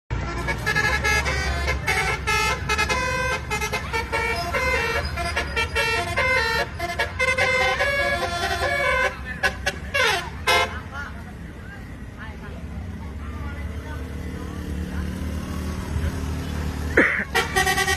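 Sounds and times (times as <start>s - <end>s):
multi-tone air horn melody: 0.1s - 10.8s, 17.3s - 17.9s.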